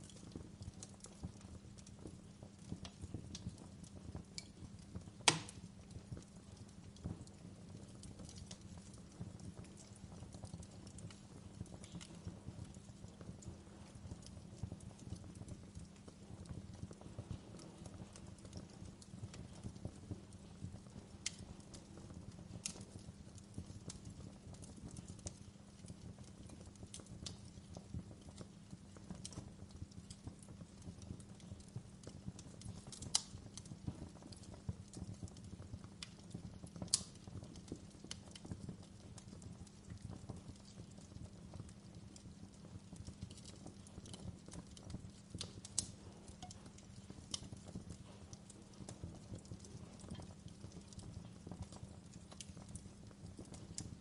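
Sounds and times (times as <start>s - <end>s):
low fire rumble: 0.0s - 54.0s
wood fire crackling: 0.0s - 54.0s
sharp fire pops: 4.2s - 6.3s, 26.2s - 41.8s, 42.9s - 54.0s.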